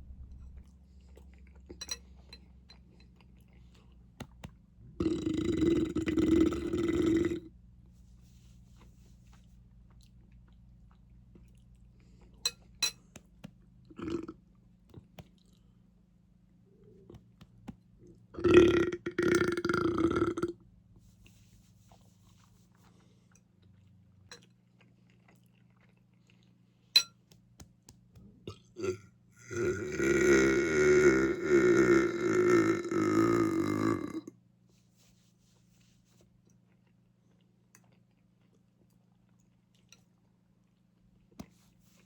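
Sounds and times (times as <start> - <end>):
person belching: 4.9 - 7.5, 13.9 - 14.4, 18.3 - 20.6, 28.5 - 34.3
chewing clicks: 36.4 - 40.1.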